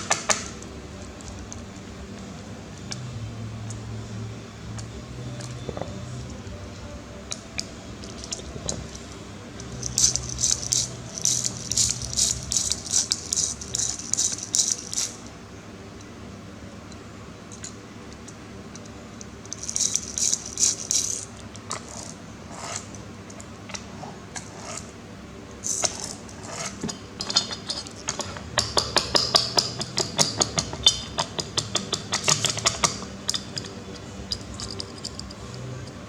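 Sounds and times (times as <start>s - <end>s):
plastic toy parts clicking: 7.3s - 9.0s, 9.6s - 15.3s, 17.5s - 22.2s, 25.6s - 36.0s.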